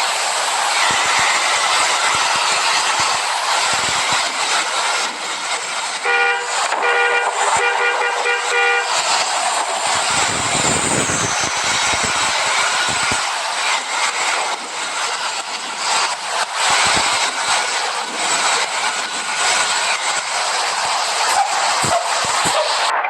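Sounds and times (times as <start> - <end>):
passing bus rushing: 0.0 - 23.0
bus horn blasts: 6.0 - 9.2.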